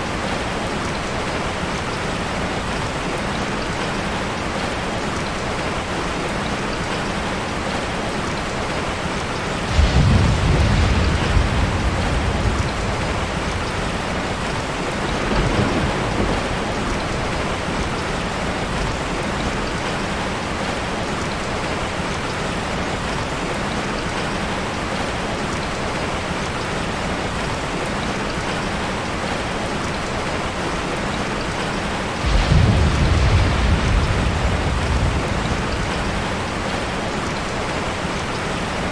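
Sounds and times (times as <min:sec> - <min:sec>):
heavy rain falling: 0:00.0 - 0:38.9
thunder rumbling: 0:09.3 - 0:20.9, 0:32.0 - 0:38.9.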